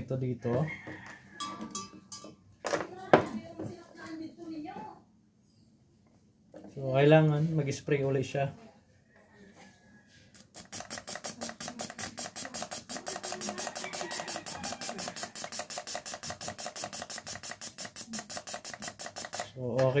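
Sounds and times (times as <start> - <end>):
fuel injector clicking and hissing: 10.4 - 20.0.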